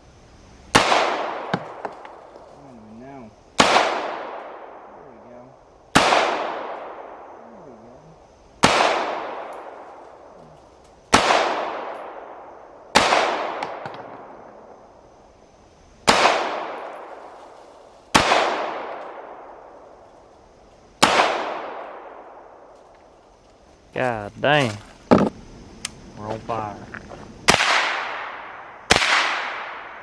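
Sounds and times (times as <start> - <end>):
gunshots echoing: 0.7 - 1.9, 3.6 - 5.0, 5.9 - 7.3, 8.6 - 10.0, 11.1 - 14.4, 16.0 - 17.1, 18.1 - 19.7, 21.0 - 22.6, 27.5 - 30.0.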